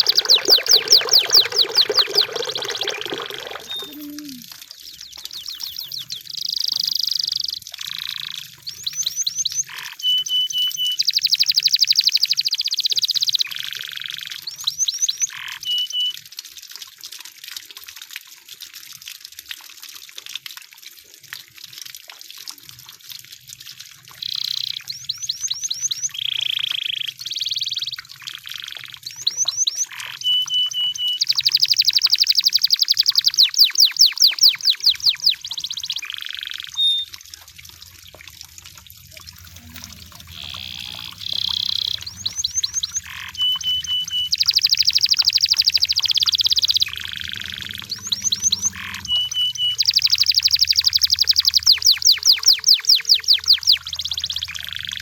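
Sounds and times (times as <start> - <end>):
canary singing trills: 0.0 - 7.2, 24.2 - 37.1, 39.2 - 55.0.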